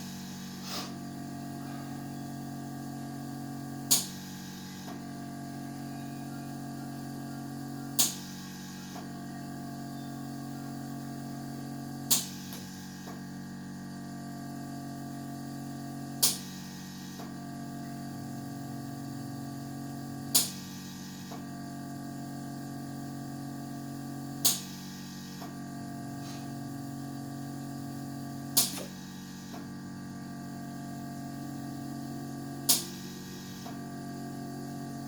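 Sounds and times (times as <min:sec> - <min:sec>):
vacuum massage machine humming: 0:00.0 - 0:35.0
sharp machine clicks: 0:08.0 - 0:09.0, 0:24.4 - 0:24.7, 0:28.6 - 0:29.0.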